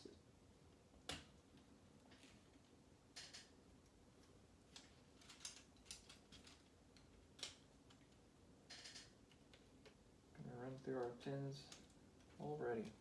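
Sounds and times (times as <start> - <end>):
plastic bricks clicking together: 4.8 - 10.0.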